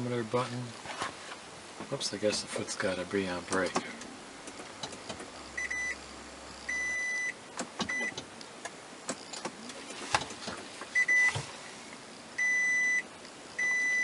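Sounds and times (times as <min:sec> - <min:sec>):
dashboard beeper beeping: 0:05.6 - 0:06.0, 0:06.7 - 0:08.2, 0:11.0 - 0:11.4, 0:12.4 - 0:14.0.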